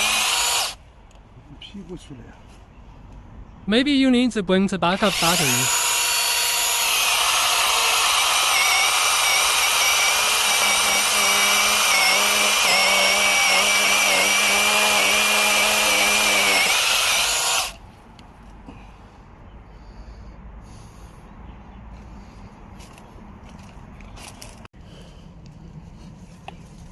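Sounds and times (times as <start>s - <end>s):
electric chainsaw cutting wood: 0.0s - 0.8s, 5.0s - 17.8s.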